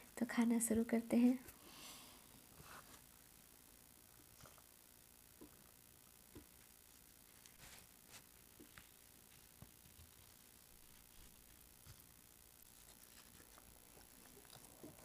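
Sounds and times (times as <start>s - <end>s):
chewing: 12.6s - 15.0s.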